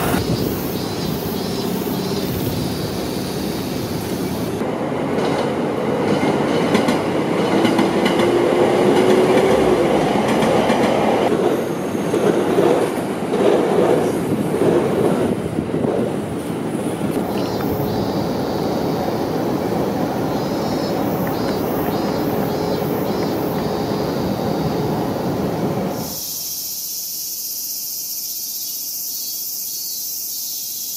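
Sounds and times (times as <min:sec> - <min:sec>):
train whine: 0:00.0 - 0:26.4.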